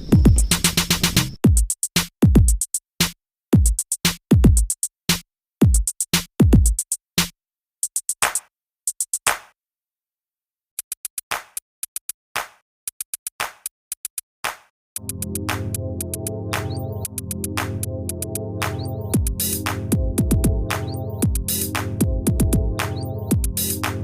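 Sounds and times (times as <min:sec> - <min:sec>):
hip-hop drum machine beat: 0:00.0 - 0:09.4, 0:15.0 - 0:24.0.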